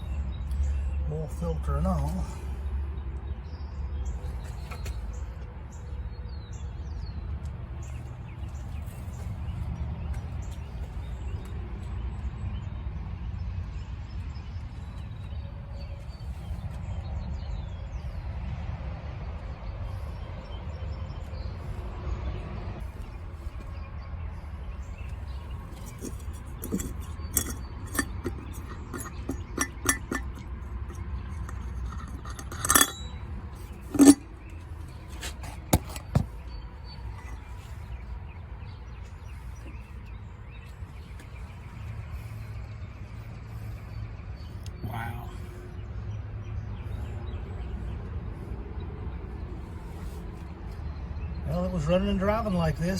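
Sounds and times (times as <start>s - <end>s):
metal tools clinking and clanking: 25.7s - 36.3s, 37.1s - 37.5s.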